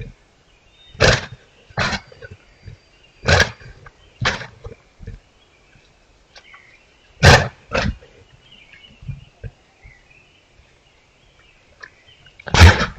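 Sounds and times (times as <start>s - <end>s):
faint sounds: 0.0s - 12.9s
moose coughing: 7.2s - 8.0s, 12.5s - 12.9s.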